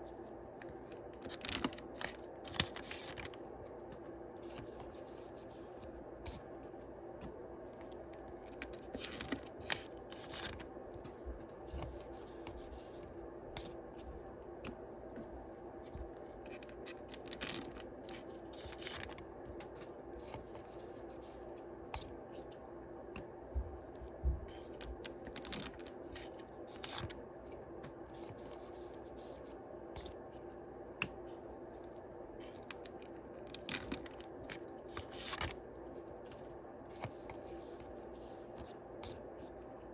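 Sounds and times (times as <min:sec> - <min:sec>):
steady low hum: 0:00.0 - 0:39.9
card packs rustling and tearing: 0:00.7 - 0:03.5, 0:08.5 - 0:10.7, 0:16.4 - 0:19.7, 0:24.6 - 0:27.1, 0:32.5 - 0:35.6.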